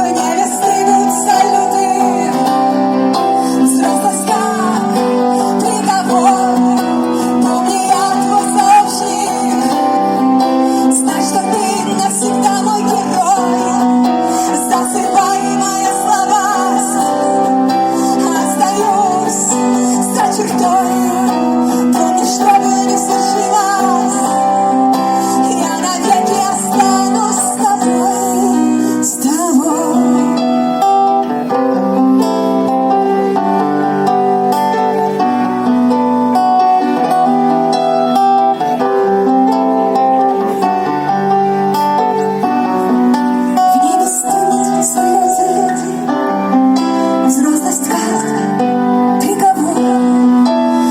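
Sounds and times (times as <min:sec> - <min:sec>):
band playing instrumental pop: 0:00.0 - 0:29.3.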